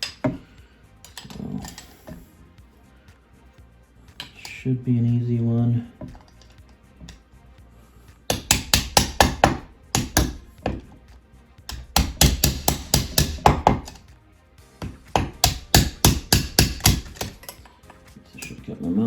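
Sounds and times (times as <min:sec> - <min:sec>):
rapid tapping on metal trim: 0:08.3 - 0:10.9, 0:11.7 - 0:14.0, 0:14.8 - 0:17.7.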